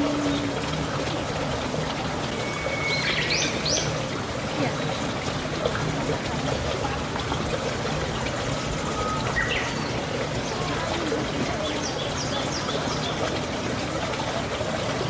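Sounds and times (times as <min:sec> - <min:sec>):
flowing water: 0:00.0 - 0:15.0
bird chirping: 0:02.4 - 0:04.2.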